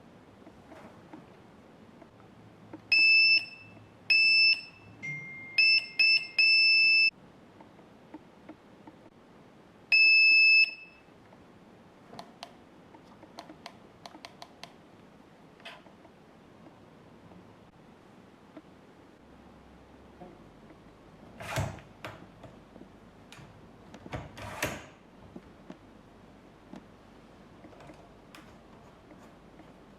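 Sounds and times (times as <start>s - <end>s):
low steady electronic tone: 2.9s - 7.2s.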